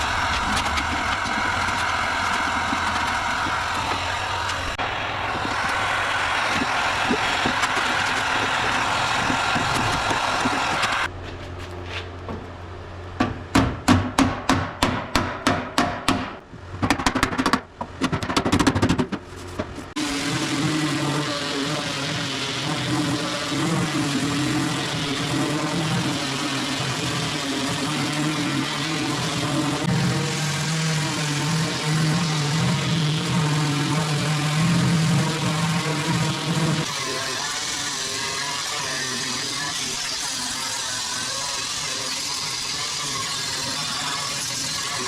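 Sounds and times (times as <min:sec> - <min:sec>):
hammer blows: 0:00.0 - 0:11.1
workshop machine noise: 0:00.0 - 0:45.0.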